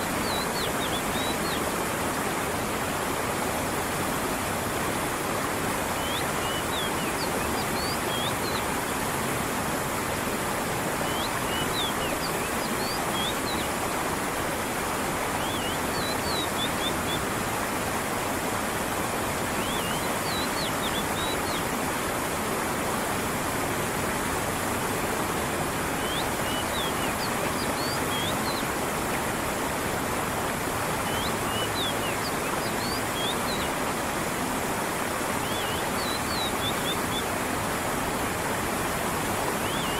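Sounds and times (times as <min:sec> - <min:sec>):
stream water rushing: 0:00.0 - 0:39.9
small birds chirping: 0:06.0 - 0:08.7, 0:15.4 - 0:17.2, 0:19.6 - 0:21.6, 0:26.0 - 0:28.7, 0:31.1 - 0:33.8, 0:35.4 - 0:37.2, 0:39.6 - 0:39.9.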